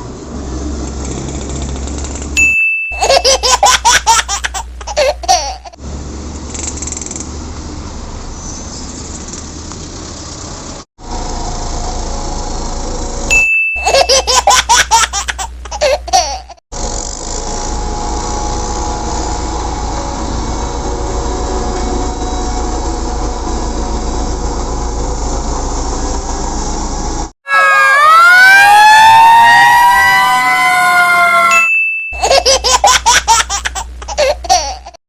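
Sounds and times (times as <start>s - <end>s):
short ding: 2.4s - 3.0s, 13.3s - 14.0s, 31.5s - 32.2s
child laughter sound effect: 3.0s - 5.8s, 13.8s - 16.6s, 27.5s - 28.1s, 30.6s - 35.0s.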